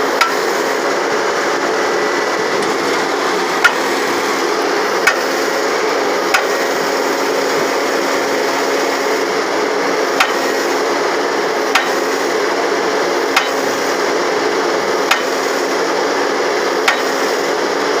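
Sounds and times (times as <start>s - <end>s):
machine engine humming: 0.0s - 18.0s
hydraulic breaker hammer knocking: 2.3s - 5.4s, 10.2s - 10.6s, 11.7s - 12.1s, 13.3s - 13.9s, 15.0s - 15.5s, 16.8s - 17.2s.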